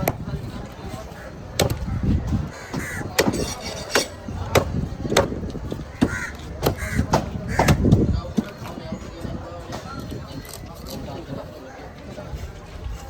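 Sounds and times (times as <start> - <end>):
knife chopping fish on block: 2.7 - 5.4.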